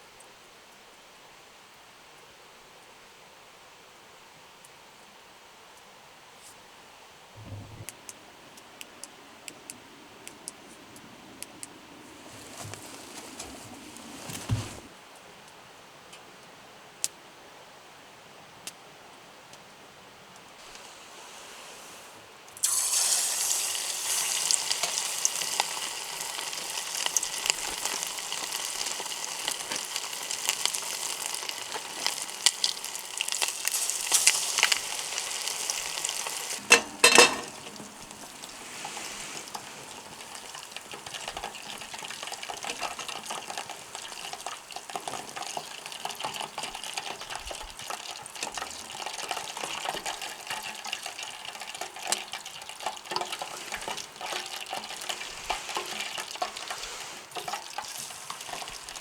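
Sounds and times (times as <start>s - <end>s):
food sizzling in a hot pan: 20.6s - 59.0s.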